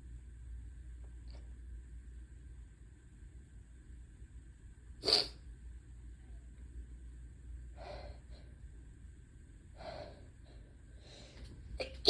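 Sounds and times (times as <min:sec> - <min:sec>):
person sneezing: 0:05.0 - 0:05.4.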